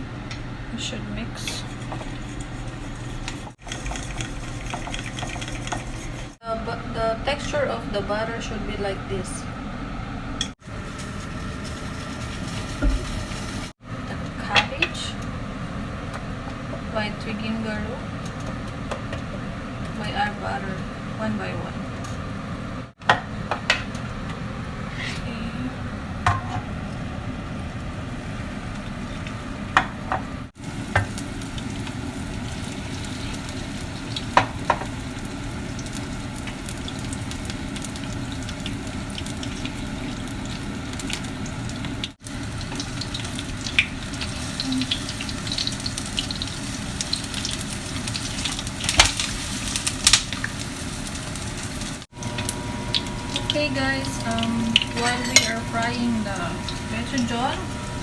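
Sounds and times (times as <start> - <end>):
leaves sizzling in hot oil: 10.6 - 13.8, 30.6 - 58.0.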